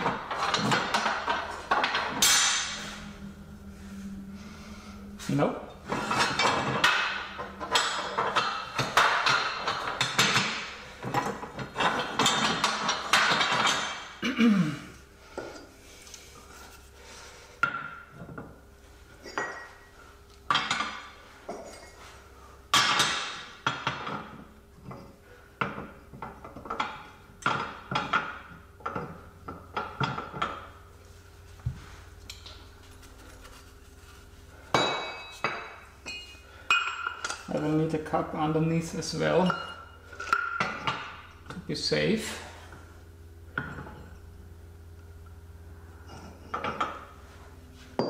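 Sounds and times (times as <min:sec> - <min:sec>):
steel tools clattering and clinking: 0:00.0 - 0:03.1, 0:05.8 - 0:14.2, 0:19.2 - 0:19.9, 0:20.5 - 0:22.1, 0:34.7 - 0:38.0, 0:38.7 - 0:41.6, 0:46.0 - 0:47.2.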